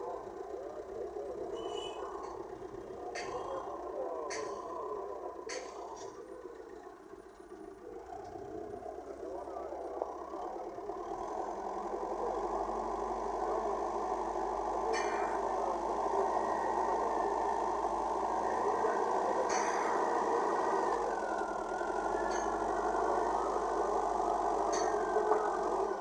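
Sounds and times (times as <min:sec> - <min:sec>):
backhoe diesel engine running: 0:00.0 - 0:26.0
wavering high whine: 0:08.9 - 0:26.0.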